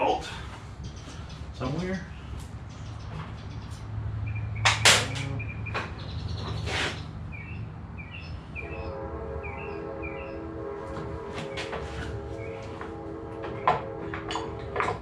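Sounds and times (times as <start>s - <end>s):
metal hardware clanking: 4.7s - 5.4s
multi-tone hum: 7.8s - 15.0s.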